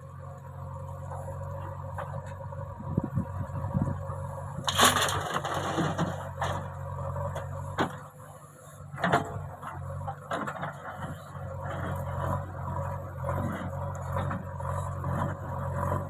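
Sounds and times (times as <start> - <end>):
diesel engine running: 0.0 - 16.0
bucket scraping soil: 4.7 - 6.6.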